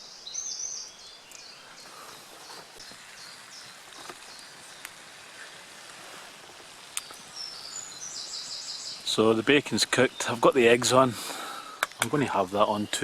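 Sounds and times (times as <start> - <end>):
songbirds chirping faintly: 0.0 - 13.0
steady soft hiss: 0.0 - 13.0
sharp clicks: 11.8 - 12.2.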